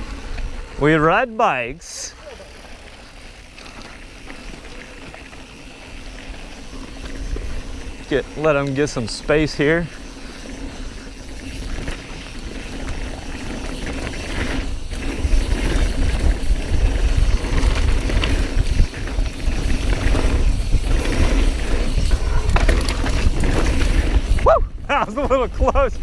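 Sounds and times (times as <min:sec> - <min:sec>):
bike rattling over rough ground: 0:00.0 - 0:26.0
wind rushing over microphone: 0:06.7 - 0:26.0.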